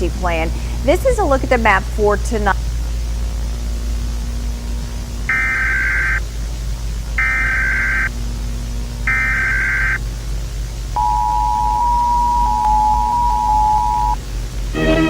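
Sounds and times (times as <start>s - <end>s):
low hum: 0.0s - 15.0s
digital data tone bursts: 5.3s - 6.2s, 7.2s - 8.1s, 9.0s - 10.0s, 11.0s - 14.2s
two-tone attention signal: 5.3s - 6.2s, 7.2s - 8.1s, 9.1s - 10.0s, 11.0s - 14.2s.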